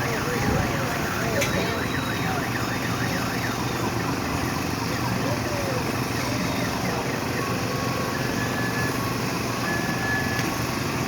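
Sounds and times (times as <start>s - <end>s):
crowded play area din: 0.0s - 4.0s.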